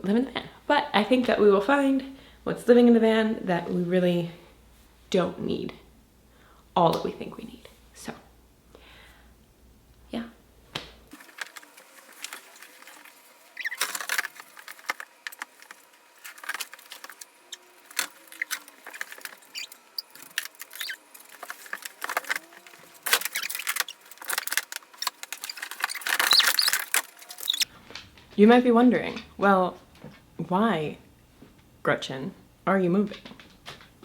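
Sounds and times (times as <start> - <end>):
small hard objects clinking: 17.8 - 27.6.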